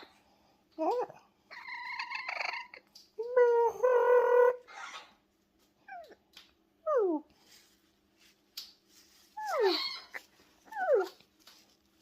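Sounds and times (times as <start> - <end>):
parrot squawking: 1.5 - 2.8, 4.0 - 5.2, 9.4 - 11.2.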